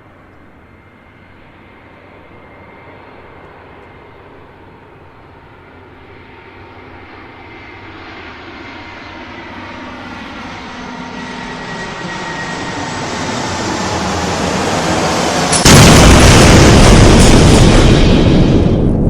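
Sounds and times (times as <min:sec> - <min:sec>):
jet airliner engine whine: 0:00.0 - 0:19.0
loud crash impact: 0:14.8 - 0:19.0.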